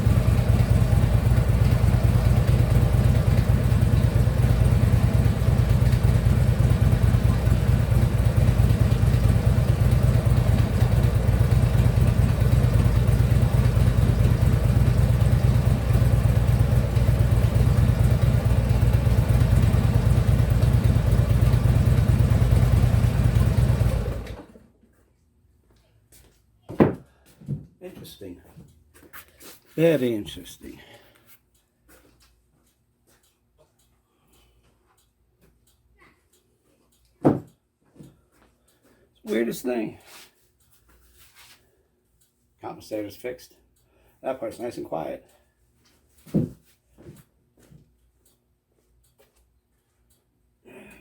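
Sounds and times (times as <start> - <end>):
motorcycle engine running: 0.0 - 24.4.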